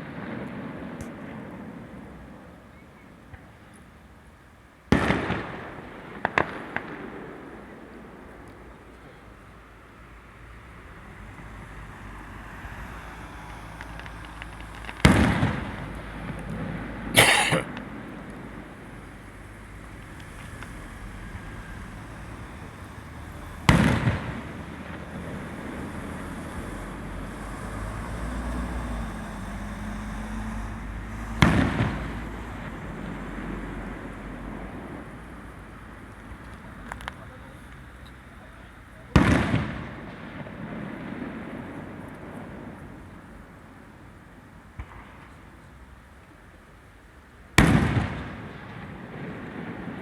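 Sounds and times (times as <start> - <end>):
low steady background noise: 0.0 - 50.0
hissing crackle: 12.7 - 16.7, 17.7 - 27.4
firework shells booming: 14.0 - 19.0, 23.5 - 25.8, 31.4 - 32.2, 39.2 - 42.7.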